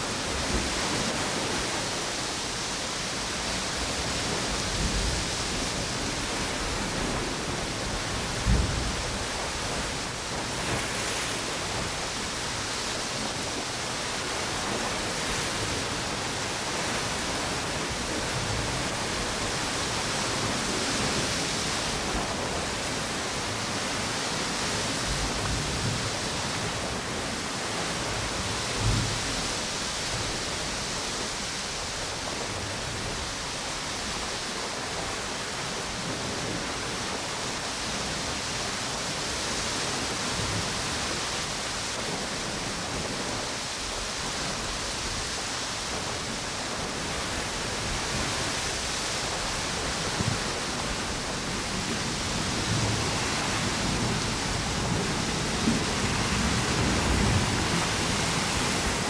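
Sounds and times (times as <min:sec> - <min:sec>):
ocean surf: 0:00.0 - 0:59.0
storm wind: 0:00.0 - 0:59.0
wind through palm trees: 0:00.0 - 0:59.0
wind thumps on microphone: 0:04.5 - 0:12.8.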